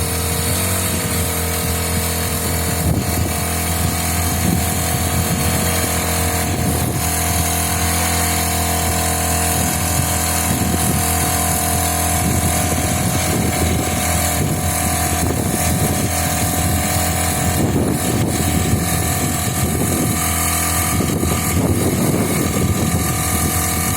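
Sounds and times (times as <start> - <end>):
small engine running steadily: 0.0 - 23.9.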